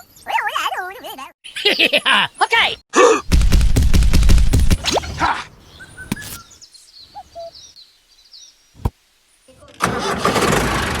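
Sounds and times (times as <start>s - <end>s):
faint bird chirps: 4.8s - 9.7s.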